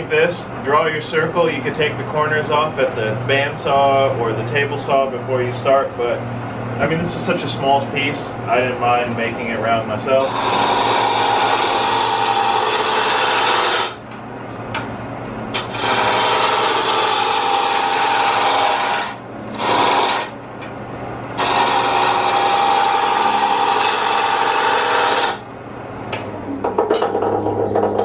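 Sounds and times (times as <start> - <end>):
gouge cutting wood on lathe: 10.2 - 14.0, 15.6 - 20.4, 21.4 - 25.4
lathe humming: 10.2 - 14.0, 15.6 - 20.4, 21.3 - 25.5.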